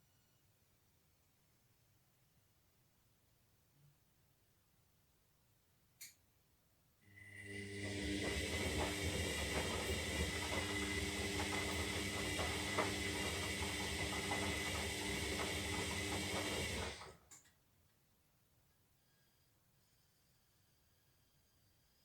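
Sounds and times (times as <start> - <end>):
washing machine motor hum: 7.1 - 17.3.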